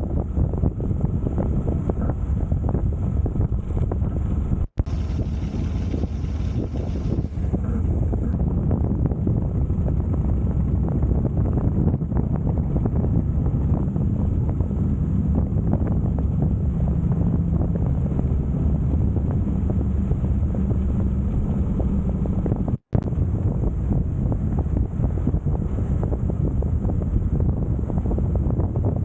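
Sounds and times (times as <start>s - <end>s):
wind buffeting microphone: 0.0s - 29.0s
motorcycle engine running: 0.3s - 28.6s.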